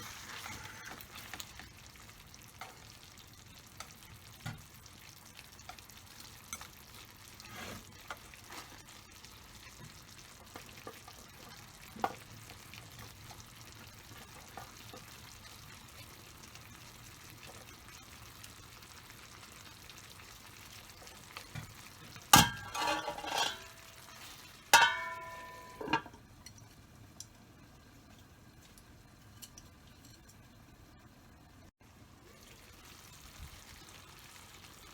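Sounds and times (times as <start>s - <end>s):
food sizzling in a frying pan: 0.0s - 34.9s
cookware clattering: 22.2s - 26.2s.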